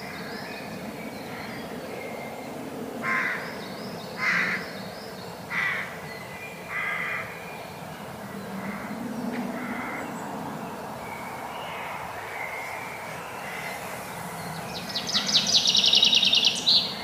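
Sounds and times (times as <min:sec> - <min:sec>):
songbirds chirping: 0:00.0 - 0:17.0
raven cawing: 0:03.0 - 0:03.6, 0:04.2 - 0:04.7, 0:05.5 - 0:06.0, 0:06.7 - 0:07.4, 0:08.6 - 0:10.1.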